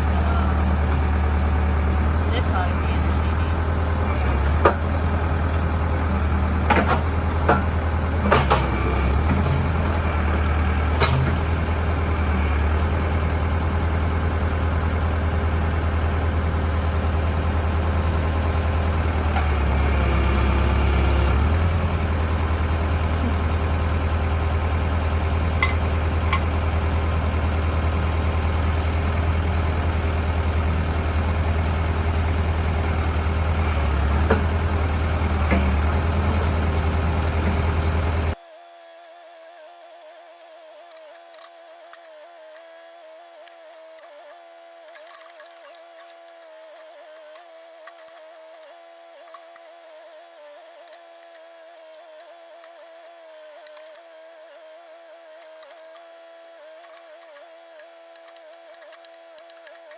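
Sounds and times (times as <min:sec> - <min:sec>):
backhoe engine running: 0:00.0 - 0:38.4.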